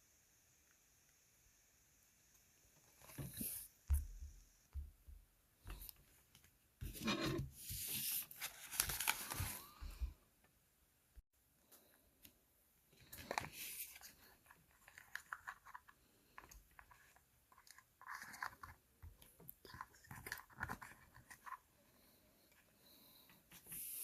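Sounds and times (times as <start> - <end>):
plastic packaging crinkling: 8.2 - 9.8.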